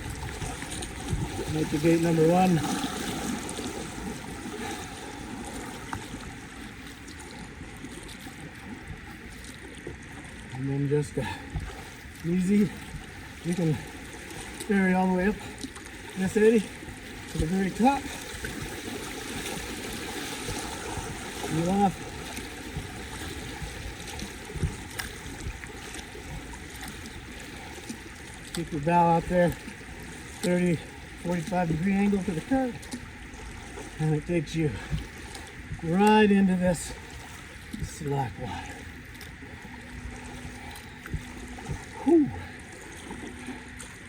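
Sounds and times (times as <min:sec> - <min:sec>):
river current rushing: 0:00.0 - 0:07.4, 0:10.8 - 0:24.5
paddle splashes: 0:00.0 - 0:44.0.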